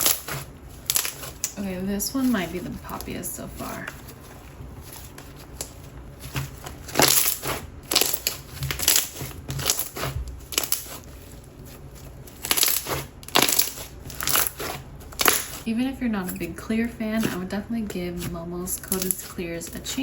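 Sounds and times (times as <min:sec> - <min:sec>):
slime squished by hand: 0:03.8 - 0:15.7.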